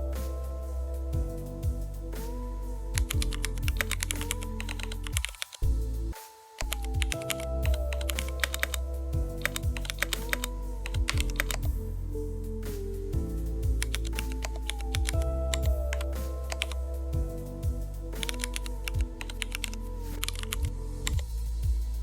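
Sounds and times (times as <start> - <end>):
background music with bass: 0.0 - 22.0.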